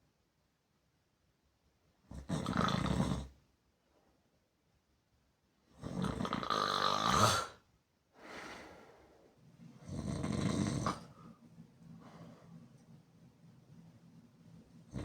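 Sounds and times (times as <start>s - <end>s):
person snoring loudly: 5.8s - 7.5s, 9.9s - 11.0s
person breathing: 8.2s - 9.4s, 11.2s - 12.8s.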